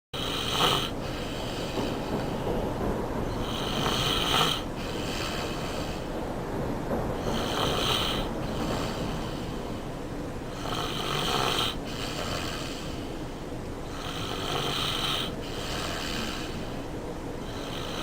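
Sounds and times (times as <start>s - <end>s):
person snoring: 0.2s - 1.6s, 10.5s - 13.1s, 13.9s - 16.8s, 17.4s - 18.0s.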